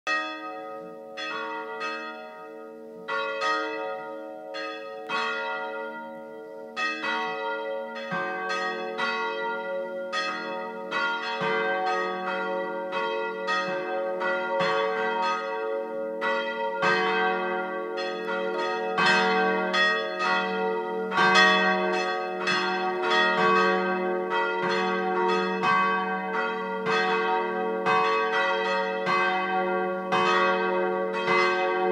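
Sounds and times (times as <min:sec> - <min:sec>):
church bells ringing: 0:00.1 - 0:31.9.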